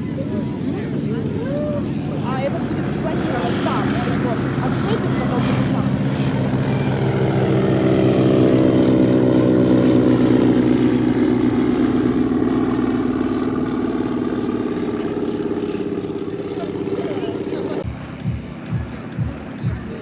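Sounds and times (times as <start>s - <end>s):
propeller aircraft engine droning: 0.0s - 20.0s.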